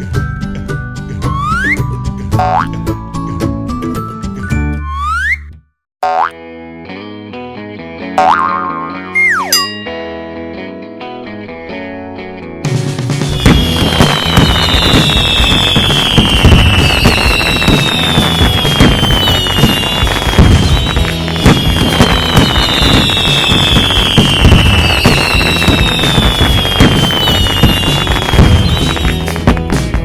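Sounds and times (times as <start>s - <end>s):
background music: 6.1s - 30.0s
fireworks crackling and popping: 13.3s - 30.0s
whistling firework rockets: 13.3s - 30.0s.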